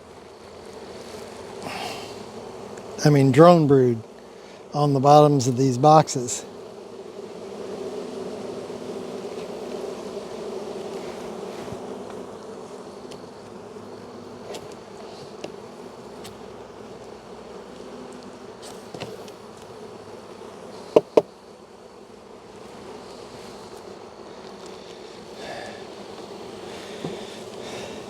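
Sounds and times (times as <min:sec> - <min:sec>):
bees buzzing: 0:00.0 - 0:28.0
sharp knocks: 0:21.0 - 0:21.3.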